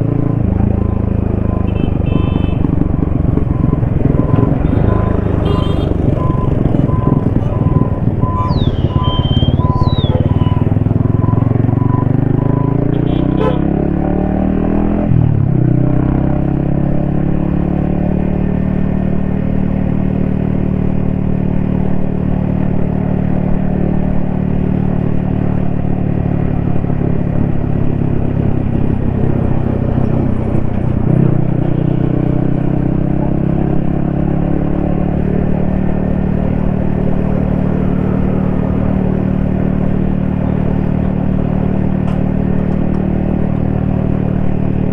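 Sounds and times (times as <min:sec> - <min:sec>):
motorcycle engine revving: 0:00.0 - 0:19.0, 0:27.9 - 0:44.9.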